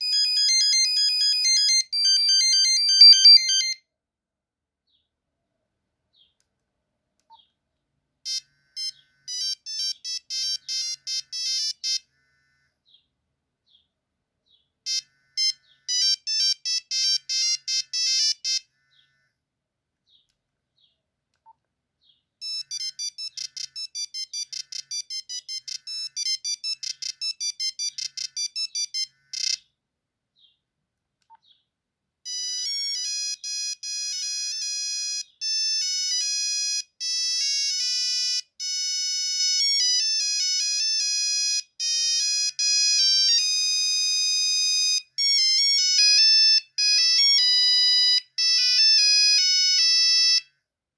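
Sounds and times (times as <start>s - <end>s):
electronic ringtone melodies: 0.0s - 3.8s, 8.3s - 12.0s, 14.9s - 18.6s, 22.4s - 29.6s, 32.3s - 50.5s.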